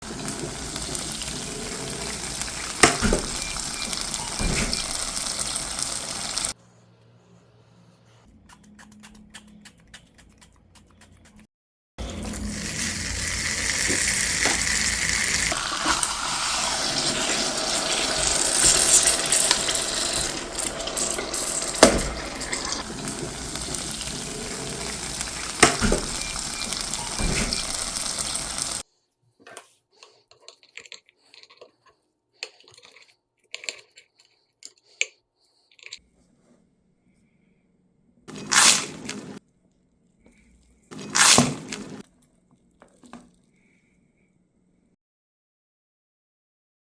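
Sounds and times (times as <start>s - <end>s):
food sizzling in a waffle iron: 0.0s - 6.6s, 12.2s - 28.8s.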